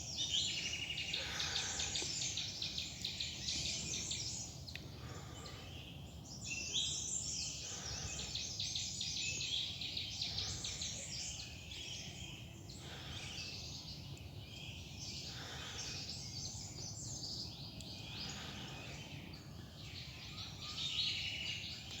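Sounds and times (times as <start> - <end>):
forest birds chirping: 0.0 - 22.0.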